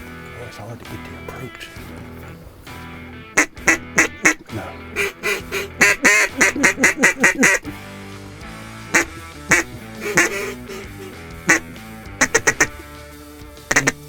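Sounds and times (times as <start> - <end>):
duck call quacks: 3.4 - 7.8, 8.9 - 12.9, 13.7 - 14.0.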